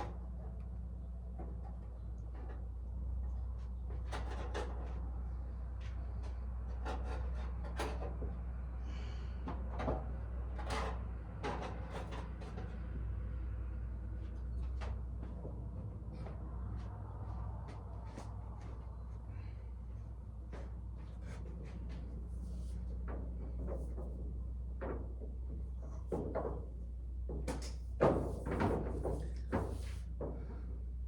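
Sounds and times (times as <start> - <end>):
objects knocking and clunking: 0.0 - 5.2, 5.8 - 8.6, 9.4 - 13.1, 22.9 - 30.7
steady low hum: 0.0 - 31.0.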